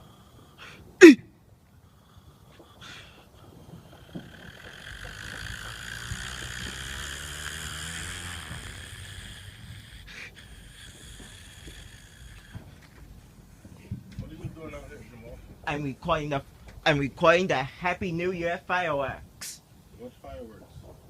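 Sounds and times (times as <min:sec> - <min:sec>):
vehicle driving past: 0:04.1 - 0:10.1.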